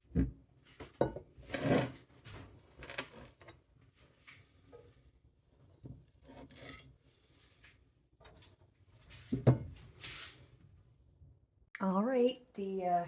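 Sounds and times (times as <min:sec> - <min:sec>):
faint rubbing and scraping: 0:01.4 - 0:10.6.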